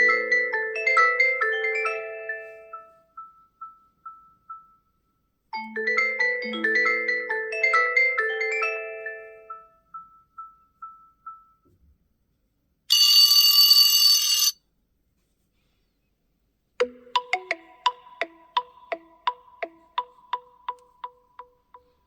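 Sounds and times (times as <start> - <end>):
mallet-like ringtone melody: 0.0 - 4.8, 5.6 - 11.6, 16.8 - 22.0
quick struck repeated notes: 16.8 - 22.0.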